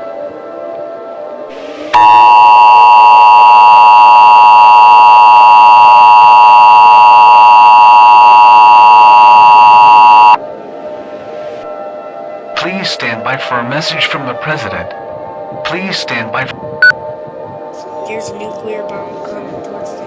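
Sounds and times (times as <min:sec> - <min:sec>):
two-tone alarm: 0:02.0 - 0:10.4.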